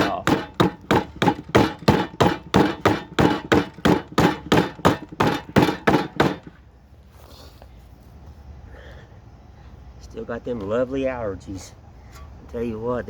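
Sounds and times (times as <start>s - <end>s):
hand tool striking wood: 0.0s - 6.6s.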